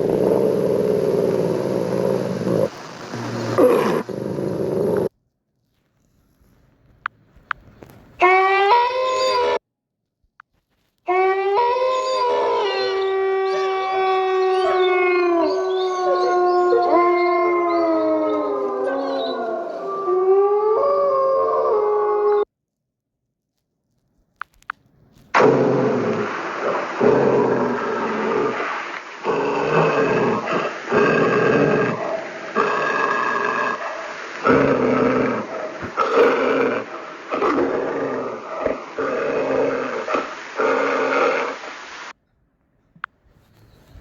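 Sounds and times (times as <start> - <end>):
dog growling: 0.0 - 2.8, 3.5 - 5.1, 29.2 - 41.6
wolves howling in chorus: 11.2 - 22.4.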